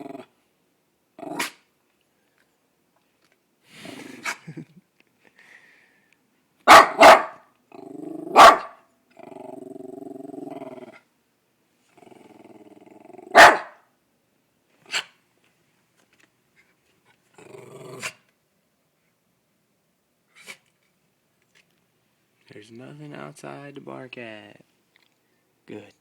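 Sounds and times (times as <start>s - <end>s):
dog growling: 0.0s - 0.4s, 7.7s - 8.5s, 9.1s - 11.1s, 11.9s - 13.4s, 17.4s - 18.2s
small dog barking: 6.6s - 7.5s, 8.3s - 8.9s, 13.3s - 13.9s.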